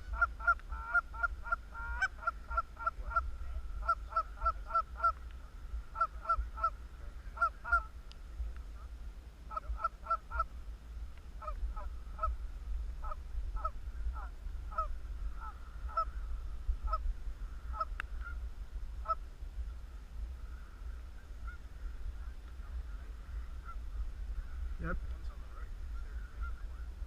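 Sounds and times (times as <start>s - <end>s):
geese honking: 0.0s - 5.2s, 5.9s - 7.9s, 9.5s - 10.5s, 13.0s - 16.2s, 17.7s - 18.4s, 20.5s - 22.0s, 25.8s - 26.9s
low steady rumble: 0.0s - 27.0s.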